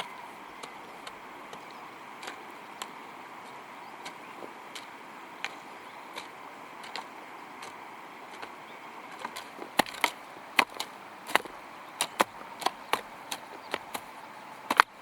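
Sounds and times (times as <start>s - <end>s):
hand tool chopping: 9.7s - 15.0s.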